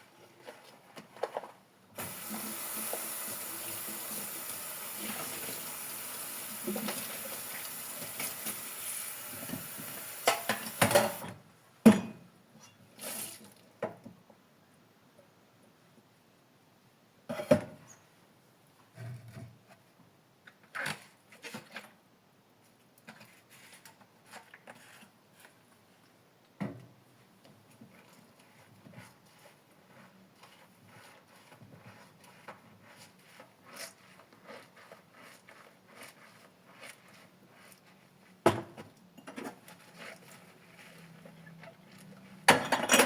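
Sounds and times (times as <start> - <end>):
scrubbing strokes: 28.0 - 38.4, 39.6 - 42.5.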